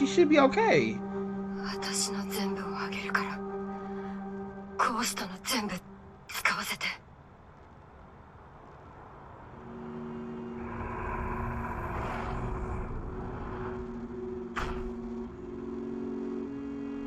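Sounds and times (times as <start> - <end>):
low sustained tonal drone: 0.0 - 6.3, 9.4 - 17.0
deep rumble: 1.0 - 17.0
short sharp hit: 14.5 - 15.0.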